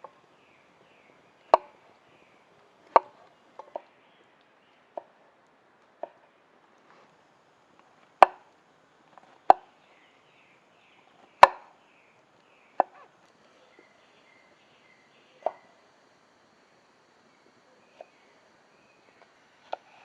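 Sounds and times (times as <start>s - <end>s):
tool striking wood: 1.5s - 1.8s, 8.2s - 8.5s, 9.2s - 9.7s, 11.4s - 11.8s, 12.8s - 13.0s.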